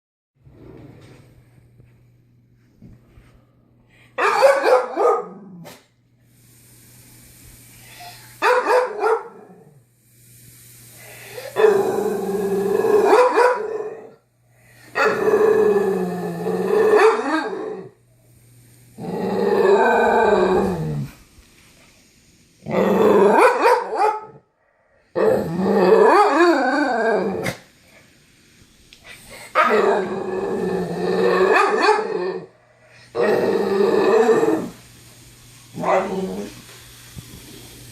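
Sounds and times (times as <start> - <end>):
dog barking and growling: 4.2 - 5.9, 8.4 - 9.8, 11.4 - 14.2, 14.9 - 18.0, 19.0 - 21.2, 22.6 - 24.4, 25.2 - 27.7, 29.4 - 32.5, 35.8 - 36.6.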